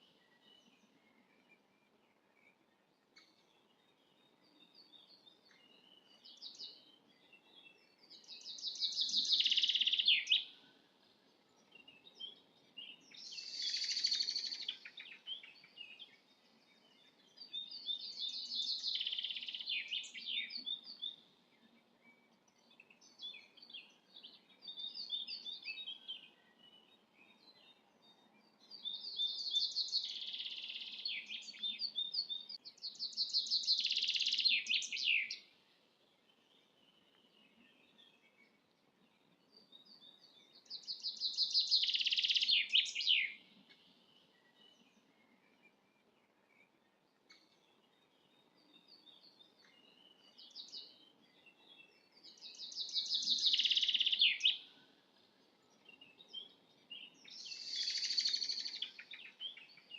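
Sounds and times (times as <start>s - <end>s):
short bird chirps: 51.6s - 54.8s, 56.0s - 59.9s.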